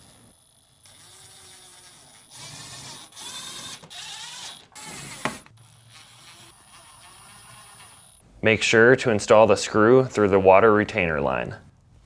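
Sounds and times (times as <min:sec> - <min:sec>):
nut driver whirring and ratcheting: 0:00.0 - 0:08.2.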